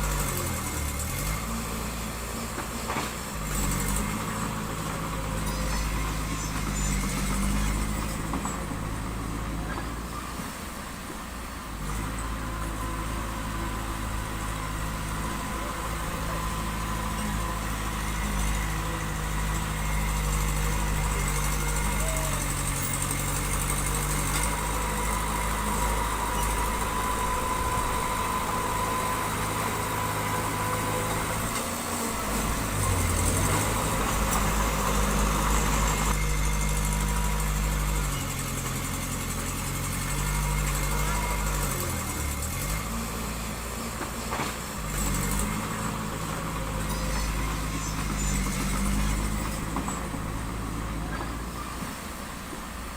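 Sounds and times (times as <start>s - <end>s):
diesel engine running: 0.0s - 52.9s
thin steady whine: 24.5s - 37.4s.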